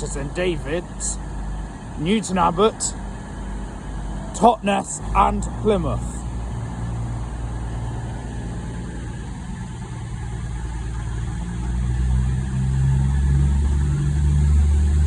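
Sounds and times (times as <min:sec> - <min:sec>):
diesel train engines humming: 0:00.0 - 0:15.0.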